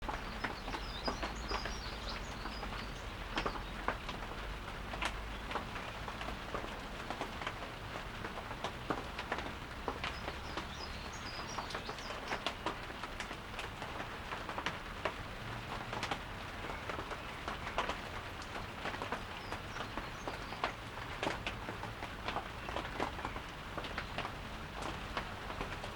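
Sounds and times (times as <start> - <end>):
light rain hiss: 0.0 - 25.9
raindrops ticking on surfaces: 0.0 - 25.9
faint bird chirping: 0.1 - 3.8.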